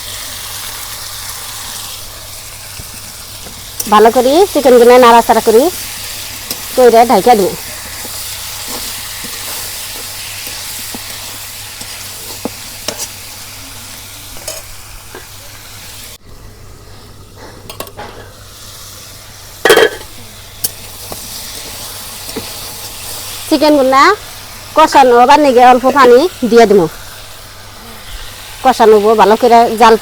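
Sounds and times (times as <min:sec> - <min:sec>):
chicken sizzling in hot oil: 0:00.0 - 0:30.0
spatula scraping and clicking: 0:07.8 - 0:13.2.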